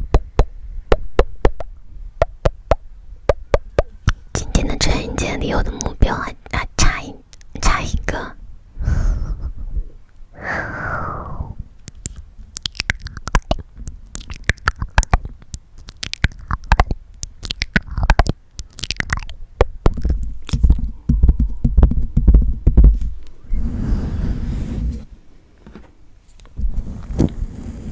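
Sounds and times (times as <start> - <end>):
breath close to microphone: 8.8 - 11.7
wet tongue clicks and mouth smacks: 11.8 - 21.0.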